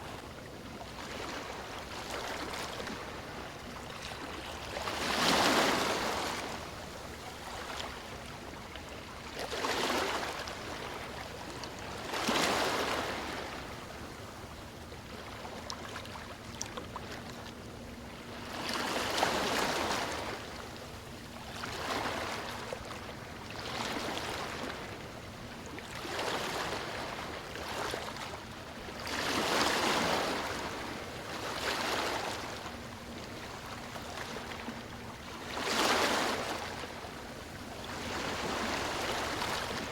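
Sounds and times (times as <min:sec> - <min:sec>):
sea waves breaking on a beach: 0:00.0 - 0:39.9.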